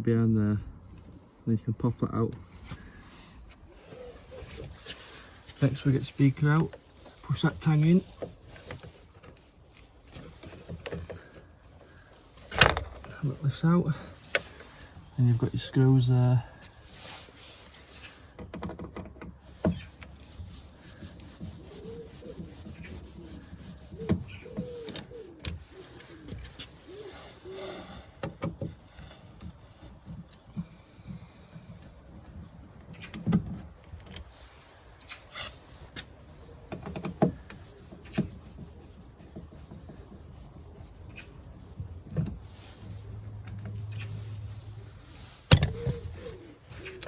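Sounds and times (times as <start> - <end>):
clicks and knocks of trim parts: 8.2 - 13.2.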